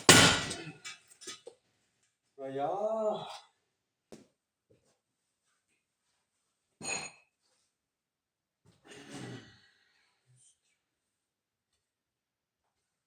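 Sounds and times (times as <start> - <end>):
sharp metallic clink: 0.0 - 0.7.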